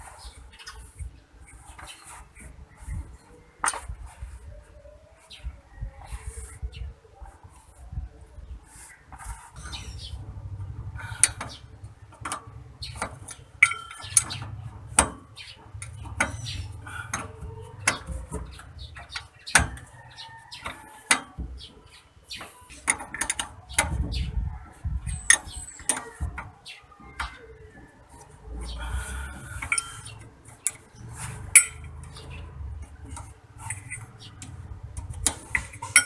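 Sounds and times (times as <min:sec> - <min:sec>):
tools and metal parts clinking: 0:11.2 - 0:19.9, 0:22.3 - 0:24.1, 0:29.6 - 0:36.0.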